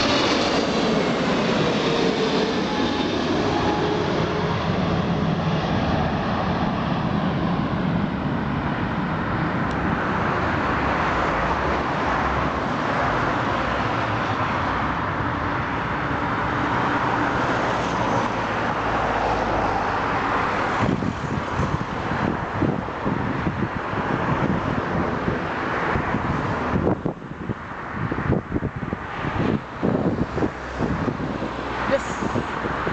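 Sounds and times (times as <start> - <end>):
jet engine whine falling: 0.0 - 12.0
jet engines roaring: 0.0 - 32.9
wind buffeting microphone: 0.0 - 32.9.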